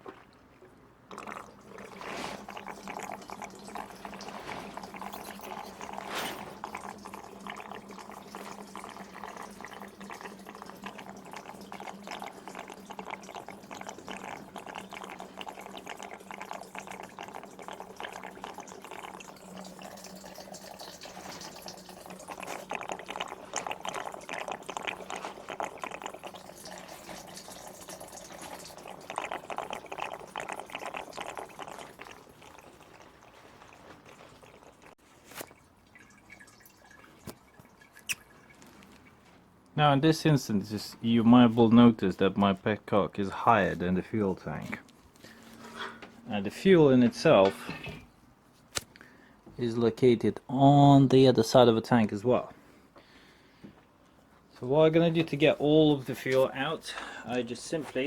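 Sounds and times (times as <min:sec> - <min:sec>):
faint steady hum: 0:00.0 - 0:58.0
petrol pouring into bucket: 0:01.1 - 0:37.4.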